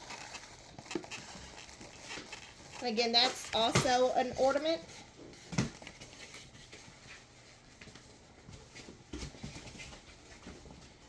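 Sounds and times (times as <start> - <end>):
packaging rustling: 0.0 - 11.0
light knocks of boxed items: 3.1 - 4.8.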